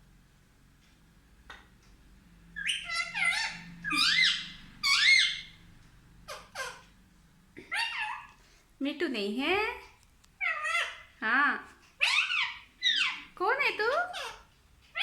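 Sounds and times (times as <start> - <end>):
parrot chirping: 2.5 - 6.8, 7.6 - 8.4, 10.4 - 11.2, 12.0 - 13.4.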